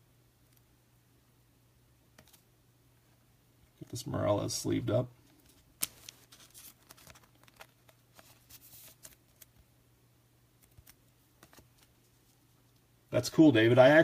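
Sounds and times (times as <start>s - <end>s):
faint low hum: 0.0s - 14.0s
card sliding into plastic sleeve: 5.5s - 9.5s.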